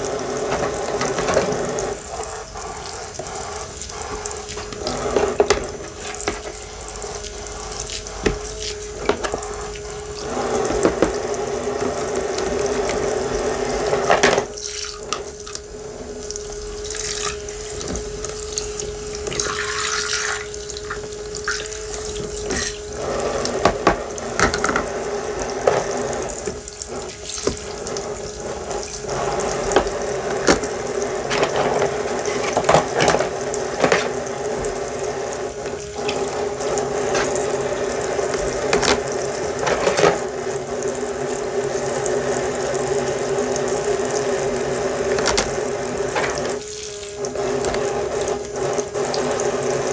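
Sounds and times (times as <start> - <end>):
tap water running into sink: 0.0 - 49.9.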